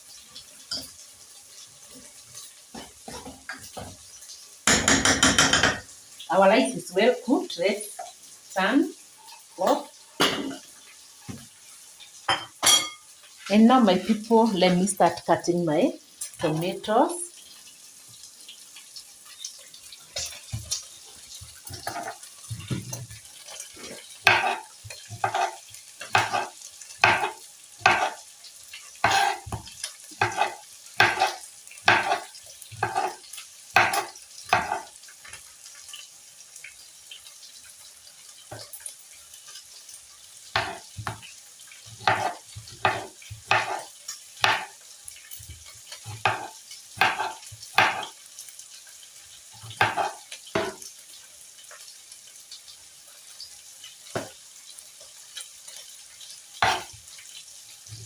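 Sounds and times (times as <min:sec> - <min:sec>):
knife chopping on cutting board: 0:24.2 - 0:24.6, 0:25.2 - 0:28.2, 0:29.0 - 0:32.2, 0:32.8 - 0:33.2, 0:33.8 - 0:34.9, 0:40.6 - 0:41.2, 0:42.0 - 0:44.7, 0:46.2 - 0:48.1, 0:49.7 - 0:50.8, 0:56.6 - 0:56.9.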